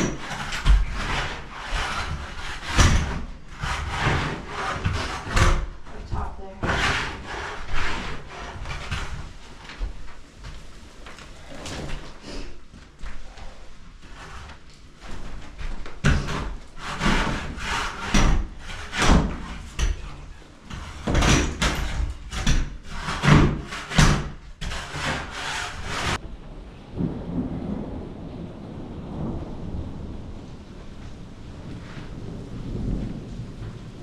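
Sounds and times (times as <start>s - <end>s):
wood scraping and cracking: 0.0s - 26.2s.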